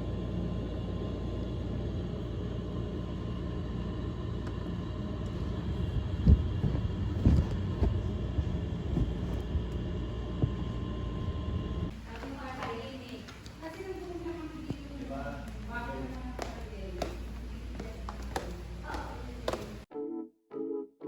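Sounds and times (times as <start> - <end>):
low vehicle rumble: 0.0 - 19.9
sharp low thumps: 5.8 - 11.9.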